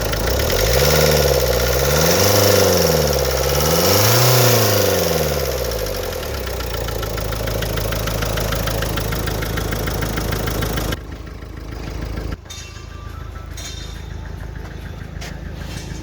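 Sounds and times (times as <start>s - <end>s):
rapid engine knocking: 0.0s - 12.4s
car engine idling: 0.0s - 16.0s.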